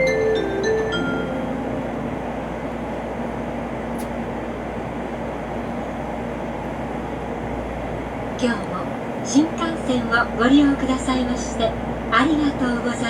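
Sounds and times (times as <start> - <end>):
announcement chime: 0.0 - 2.5
train rumble inside carriage: 0.0 - 13.0
brief click: 4.0 - 4.2.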